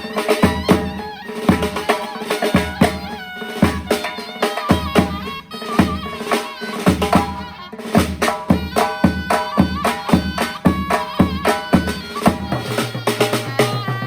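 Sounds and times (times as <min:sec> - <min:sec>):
shawm playing a bending melody: 0:00.0 - 0:14.0
steady drum strokes: 0:00.0 - 0:14.0.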